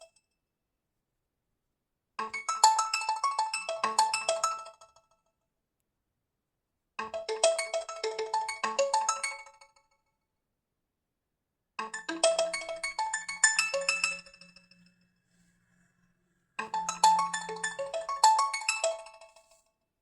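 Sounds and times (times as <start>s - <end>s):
mobile phone ringtone melody: 7.1s - 9.5s, 11.8s - 14.9s, 16.6s - 19.5s.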